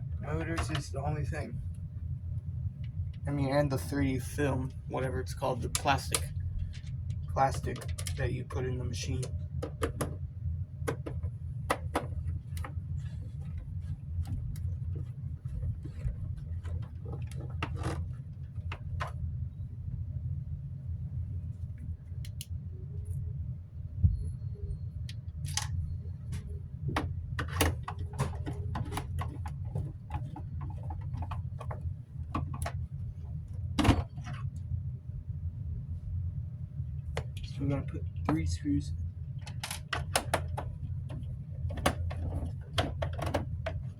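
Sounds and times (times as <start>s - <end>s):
steady low hum: 0.0s - 43.9s
plastic parts clicking and knocking: 16.6s - 19.2s, 26.4s - 32.8s, 39.4s - 43.9s.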